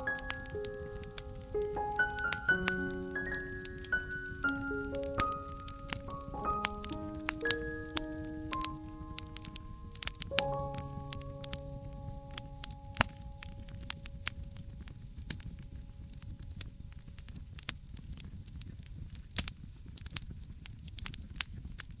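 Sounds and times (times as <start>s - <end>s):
lingering musical tone: 0.0s - 16.2s
fire popping: 0.0s - 22.0s
wood fire crackling: 0.0s - 22.0s.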